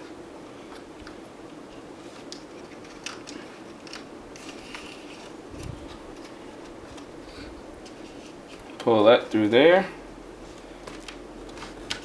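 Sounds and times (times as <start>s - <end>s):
steady low hum: 0.0s - 12.0s
plastic parts clicking and tapping: 2.3s - 5.3s.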